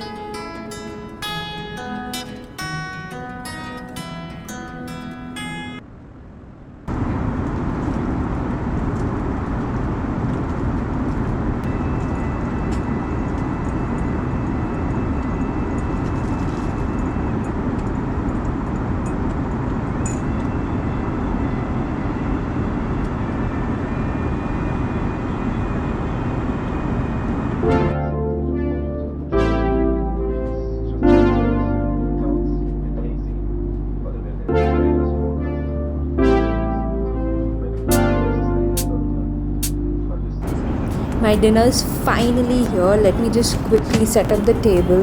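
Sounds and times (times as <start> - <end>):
airplane cabin engine rush: 5.9 - 27.8, 40.4 - 45.0.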